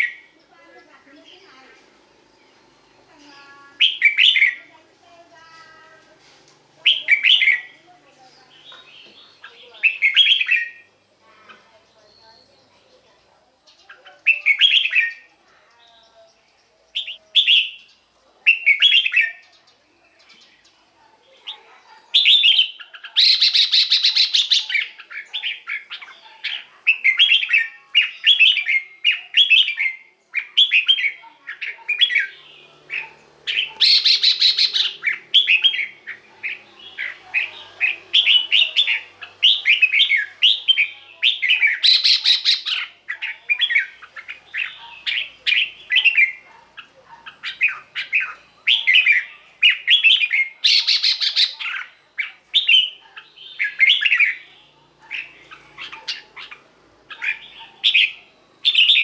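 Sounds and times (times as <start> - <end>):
bird warbling song: 0.0 - 4.8, 6.8 - 59.0
scratchy bird calls: 21.5 - 59.0.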